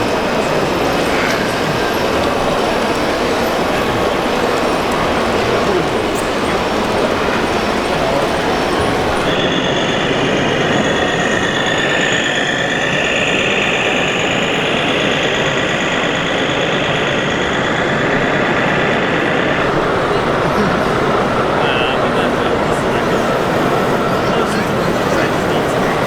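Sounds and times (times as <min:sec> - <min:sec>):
loud rushing background: 0:06.5 - 0:26.0.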